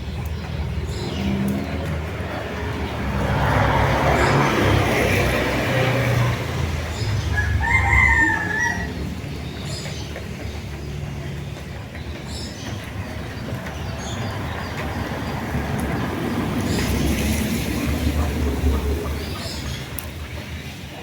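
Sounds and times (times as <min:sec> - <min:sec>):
rooster crowing: 0:07.2 - 0:09.0.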